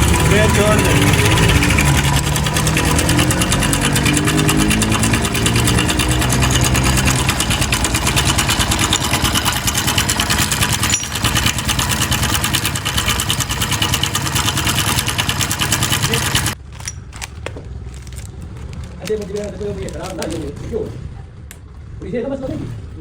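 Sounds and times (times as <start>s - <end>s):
motorcycle engine idling: 0.0s - 16.6s
rapid even ticking: 0.0s - 17.1s.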